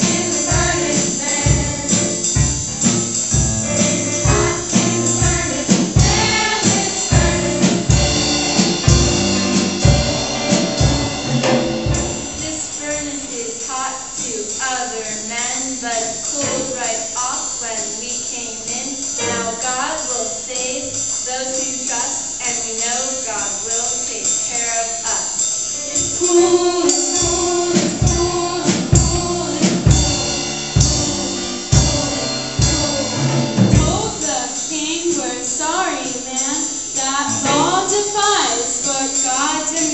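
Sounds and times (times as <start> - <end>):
choir singing: 0.0 - 2.3, 3.5 - 12.9, 19.2 - 19.8, 25.8 - 34.6, 37.0 - 39.9
drum kit beat: 0.0 - 17.4, 18.6 - 21.1, 25.7 - 39.9.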